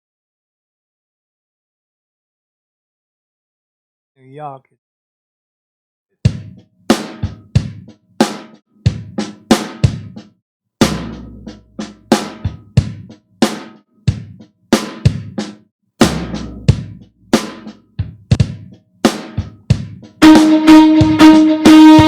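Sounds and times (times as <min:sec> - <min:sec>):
electronic drum kit hits: 0:06.3 - 0:10.2, 0:10.8 - 0:13.1, 0:14.1 - 0:22.0.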